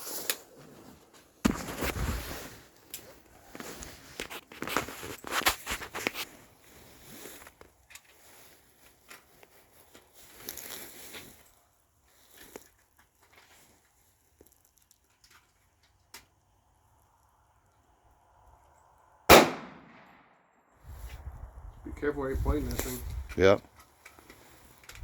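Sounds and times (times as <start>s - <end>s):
rustling handling noises: 0.0s - 15.9s, 22.4s - 25.0s.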